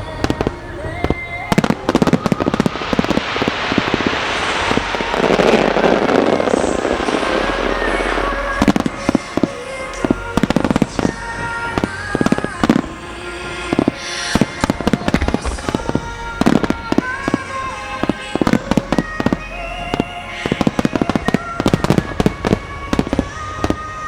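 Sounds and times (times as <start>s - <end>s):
fireworks crackling and booming: 0.0s - 24.0s
music with held notes: 0.0s - 24.0s.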